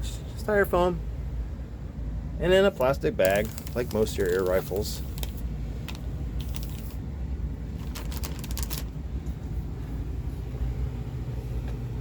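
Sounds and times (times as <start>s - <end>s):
steady low hum: 0.0s - 12.0s
plastic bag and styrofoam crinkling: 3.3s - 5.4s, 6.4s - 7.0s, 7.8s - 9.0s.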